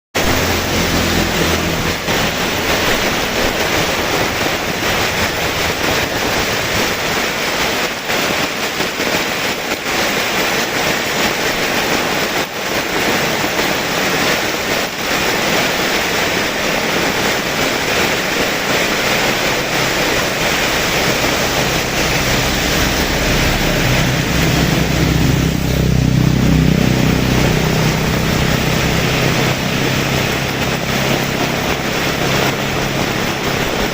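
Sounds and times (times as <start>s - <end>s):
heavy rain falling: 0.1s - 33.9s
low rumble: 0.2s - 7.6s, 16.4s - 33.9s.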